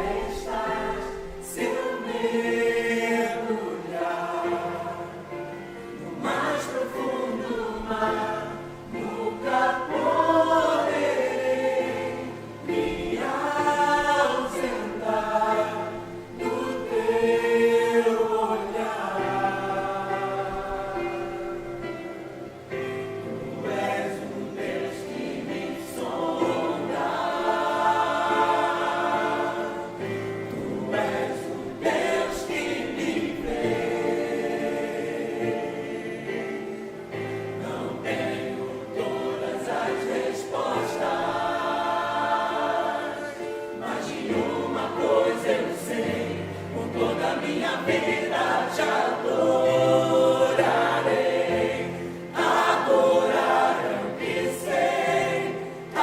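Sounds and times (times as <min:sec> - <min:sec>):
choir singing a hymn: 0:00.0 - 0:56.0.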